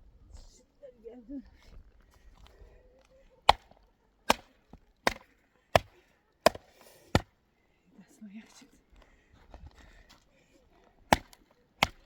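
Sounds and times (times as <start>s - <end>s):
tool striking wood: 3.5s - 5.9s, 6.5s - 7.3s, 11.1s - 12.0s.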